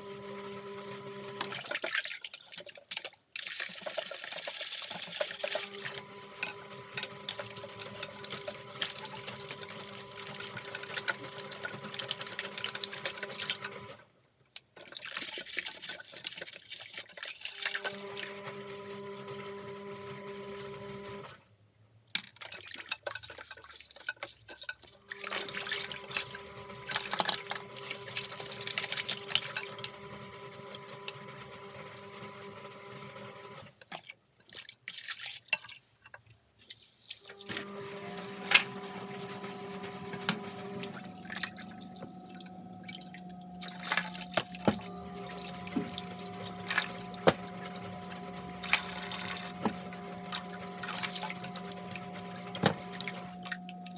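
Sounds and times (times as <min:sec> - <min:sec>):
water running from a tap: 0:25.0 - 0:29.9, 0:37.2 - 0:53.9.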